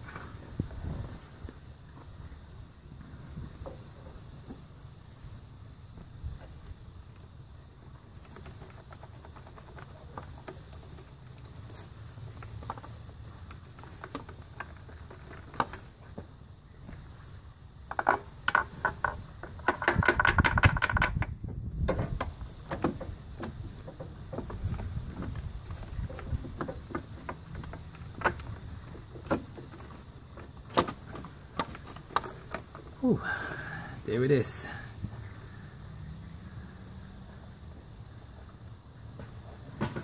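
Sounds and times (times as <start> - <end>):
hand tools clicking and tapping: 17.9 - 32.9.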